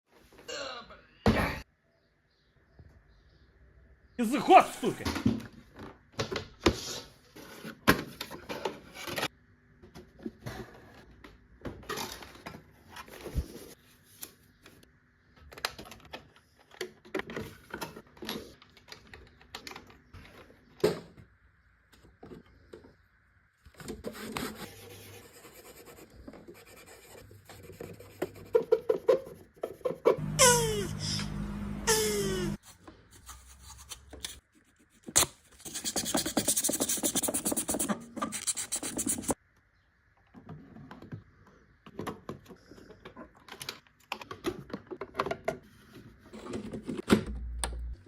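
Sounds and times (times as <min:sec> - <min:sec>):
scratching and rubbing on computer parts: 0:32.0 - 0:39.4.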